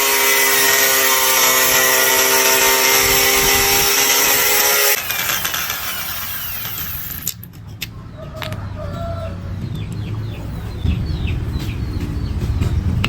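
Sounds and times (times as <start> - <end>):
chickens clucking: 7.9 - 12.8
chickens chirping: 7.9 - 13.0.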